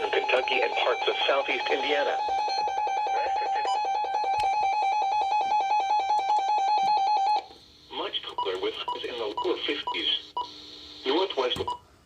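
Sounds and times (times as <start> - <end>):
pulsing electronic alarm tone: 0.0 - 7.4.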